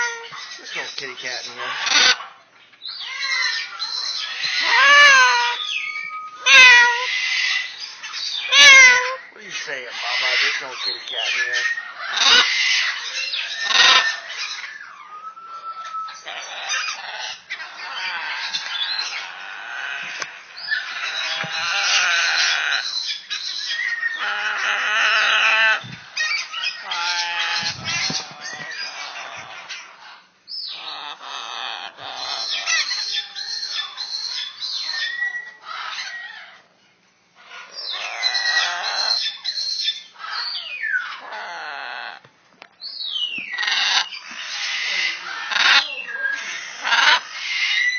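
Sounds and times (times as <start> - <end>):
parrot squawking: 0.0 - 36.7, 37.4 - 42.3, 43.0 - 47.9.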